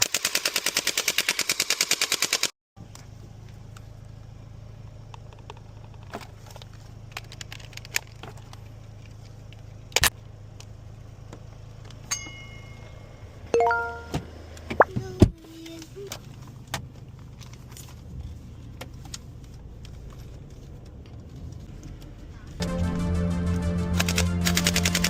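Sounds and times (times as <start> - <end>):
rapid automatic gunfire: 24.0 - 25.0.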